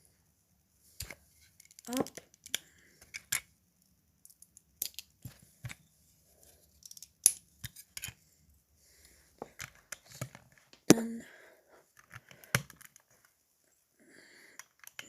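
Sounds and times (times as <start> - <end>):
plastic bricks clicking: 4.2 - 5.8, 14.6 - 15.0.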